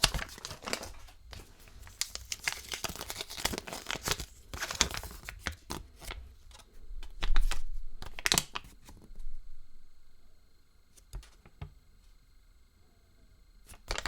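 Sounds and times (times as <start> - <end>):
wrapping crinkling and tearing: 0.0 - 6.2, 7.2 - 8.9.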